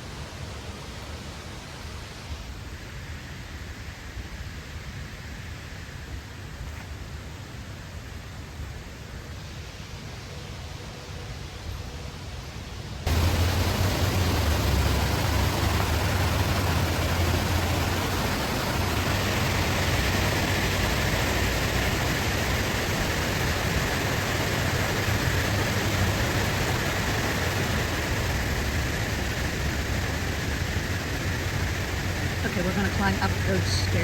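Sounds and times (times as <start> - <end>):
creek and waterfall rushing: 13.1 - 34.0.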